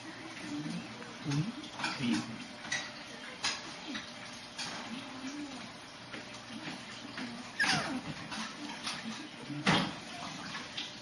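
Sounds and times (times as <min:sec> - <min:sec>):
puppy whimpering: 0:07.5 - 0:08.4
puppy high whine: 0:07.5 - 0:08.5.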